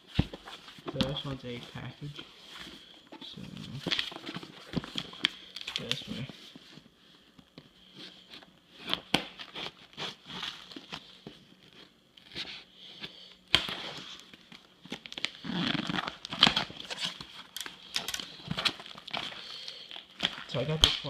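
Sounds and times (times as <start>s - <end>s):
packing material crinkling: 2.9s - 6.3s, 13.6s - 21.0s.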